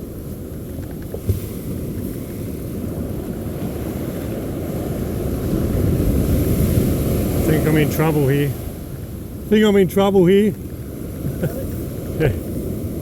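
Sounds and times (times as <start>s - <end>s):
surf washing: 0.0s - 13.0s
wind buffeting microphone: 0.0s - 13.0s.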